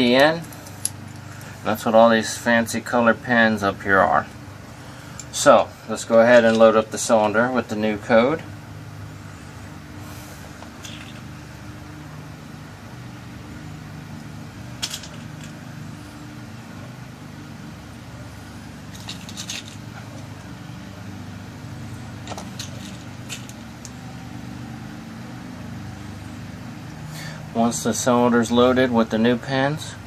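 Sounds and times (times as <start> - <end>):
steady low hum: 0.0 - 30.0
small metal pins clicking: 18.9 - 19.9.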